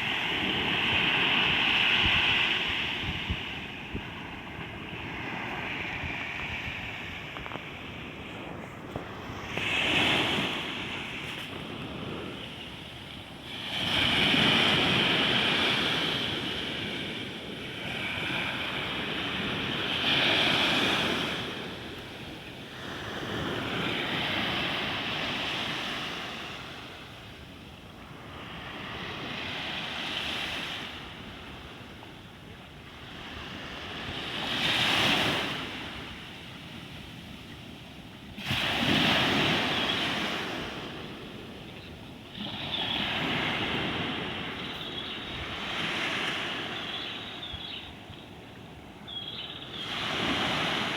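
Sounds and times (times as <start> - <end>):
sea waves breaking: 38.3 - 47.2.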